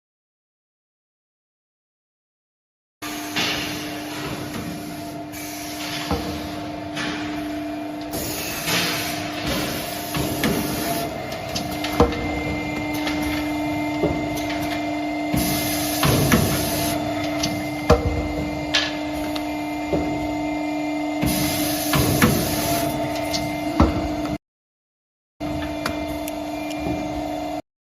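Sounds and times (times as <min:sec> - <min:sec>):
machine motor hum: 0:03.1 - 0:24.4.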